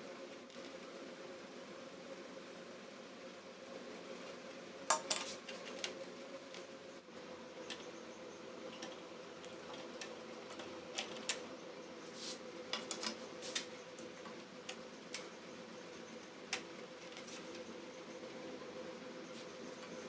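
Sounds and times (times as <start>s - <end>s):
steady hum: 0.0s - 20.0s
small parts clicking and tapping: 7.6s - 7.9s, 8.6s - 11.5s, 12.7s - 15.4s.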